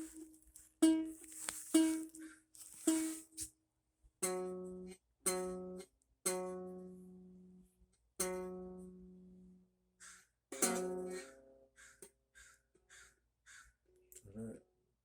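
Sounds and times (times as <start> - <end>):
strummed chords on string instrument: 4.2 - 7.6, 8.2 - 9.5, 10.5 - 11.6.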